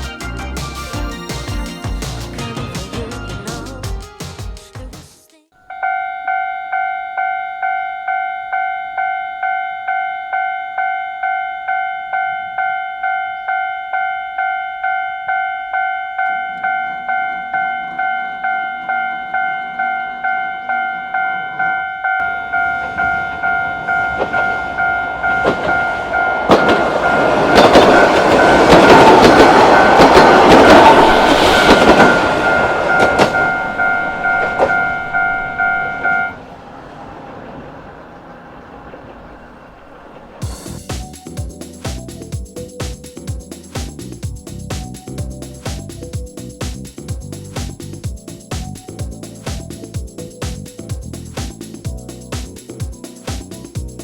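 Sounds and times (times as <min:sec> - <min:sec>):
level-crossing bell ringing: 0:05.7 - 0:31.0, 0:32.1 - 0:36.4
train rumbling past: 0:10.8 - 0:54.0
train wheels clicking on rail joints: 0:16.2 - 0:22.3, 0:22.9 - 0:36.1.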